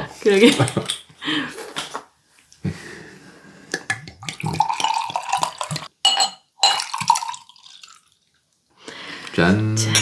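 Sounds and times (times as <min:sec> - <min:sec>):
liquid poured into glasses: 0:03.8 - 0:08.5
glasses clinking: 0:04.7 - 0:07.4.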